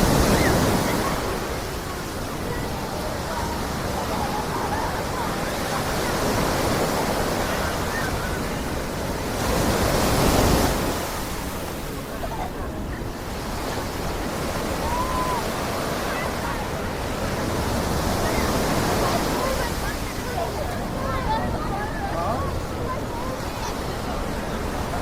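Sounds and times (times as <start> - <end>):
surf washing onto beach: 0.0 - 25.0.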